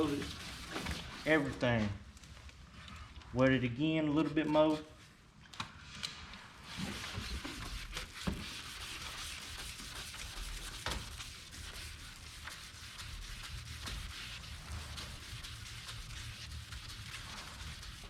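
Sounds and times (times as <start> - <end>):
sanding pad scrubbing wet plastic: 0.0 - 1.6, 6.6 - 18.0.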